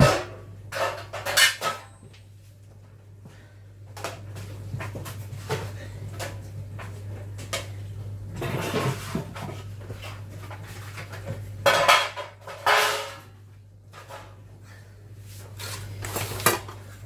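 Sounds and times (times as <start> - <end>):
metal baking tins clattering: 11.7 - 13.2.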